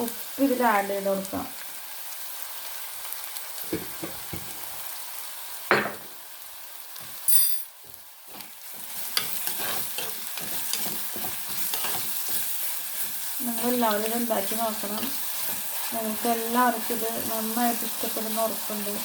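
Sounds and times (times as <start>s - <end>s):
onions sizzling in hot oil: 0.0s - 19.0s
spoon clinking on a pan: 7.3s - 7.8s
spoon scraping a pan: 8.3s - 16.0s
spoon stirring strokes: 8.3s - 19.0s.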